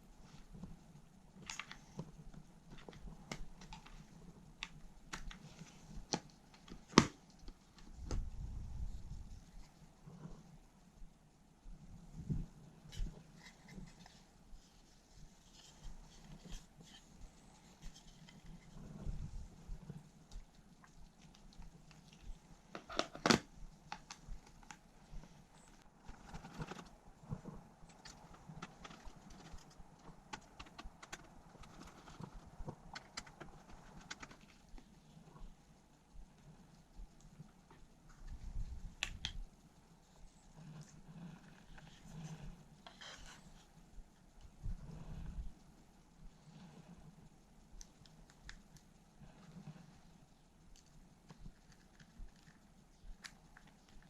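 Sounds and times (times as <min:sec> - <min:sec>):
faint low hum: 0:00.0 - 0:54.0
laptop parts clicking and tapping: 0:27.9 - 0:34.8.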